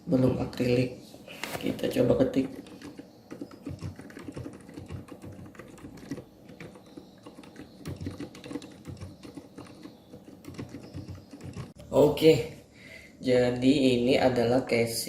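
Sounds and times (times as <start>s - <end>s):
mechanical keyboard typing: 2.0s - 11.8s.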